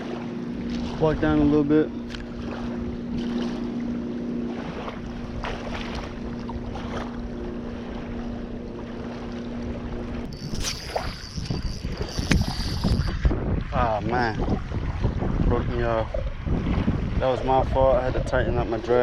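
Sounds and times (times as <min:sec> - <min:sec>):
engine humming: 0:00.0 - 0:13.4
wind noise on microphone: 0:09.8 - 0:19.0.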